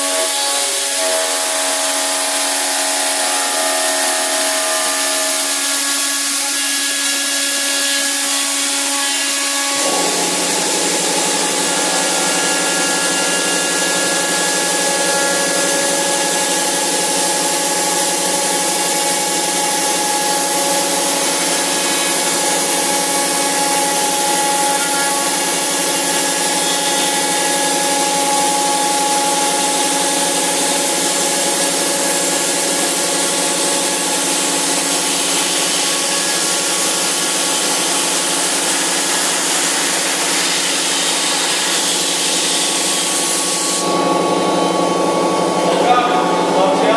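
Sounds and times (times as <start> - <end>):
milling spindle cutting: 0.1 - 36.6.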